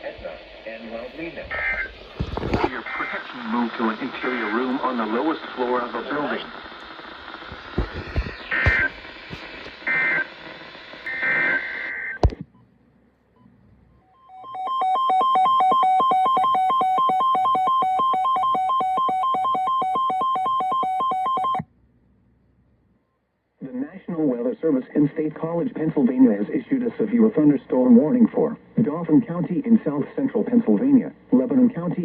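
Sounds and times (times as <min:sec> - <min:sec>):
radio hiss: 0:00.0 - 0:12.4, 0:23.6 - 0:32.0
two-pitched data tone bursts: 0:14.2 - 0:21.6.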